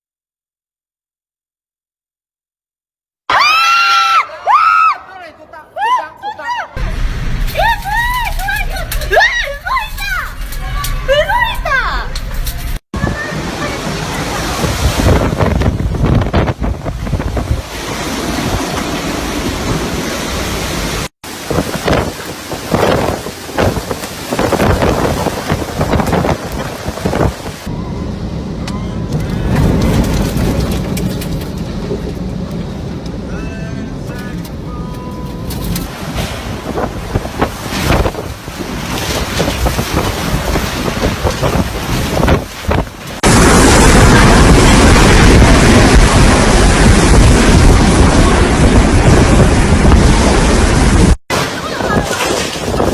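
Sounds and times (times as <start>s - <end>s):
gusting wind buffeting microphone: 6.8s - 52.9s.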